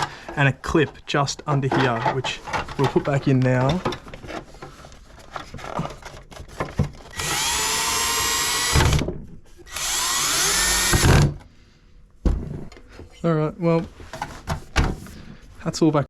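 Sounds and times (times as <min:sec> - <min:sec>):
power drill driving screws: 0:07.1 - 0:09.1, 0:09.7 - 0:11.4.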